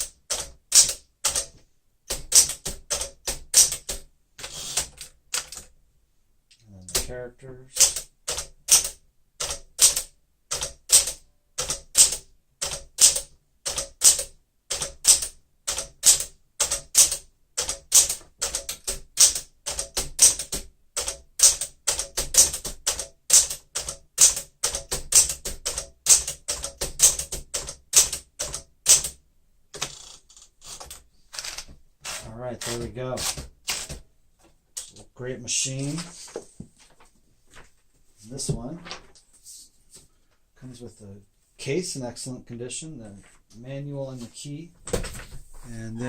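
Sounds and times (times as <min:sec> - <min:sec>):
manual typewriter typing: 0:00.0 - 0:05.7, 0:06.9 - 0:34.0.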